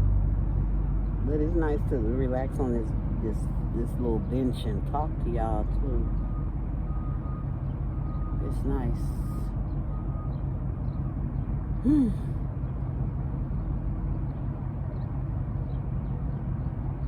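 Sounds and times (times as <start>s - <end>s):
low outdoor rumble: 0.0s - 17.0s
person humming or sighing: 11.8s - 12.3s.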